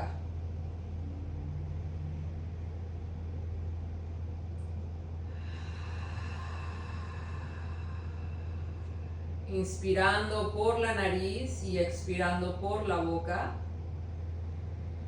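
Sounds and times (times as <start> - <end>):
steady low hum: 0.0 - 15.0
person breathing deeply: 5.2 - 9.6.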